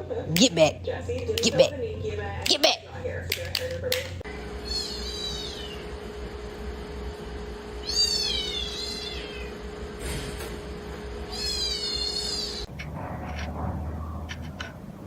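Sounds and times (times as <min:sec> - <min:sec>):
cat meowing: 0:04.6 - 0:05.8, 0:07.8 - 0:09.6, 0:11.3 - 0:12.7.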